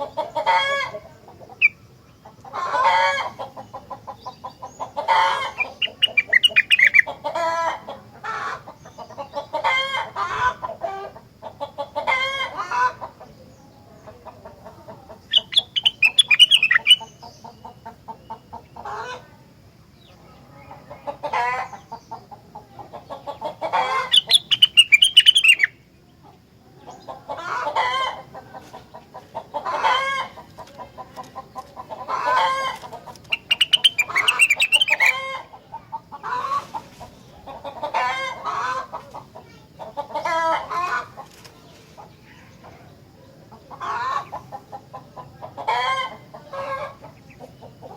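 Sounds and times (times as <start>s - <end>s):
songbird trilling and chattering: 0.0s - 7.5s, 13.1s - 19.2s, 20.0s - 28.1s, 29.9s - 36.4s.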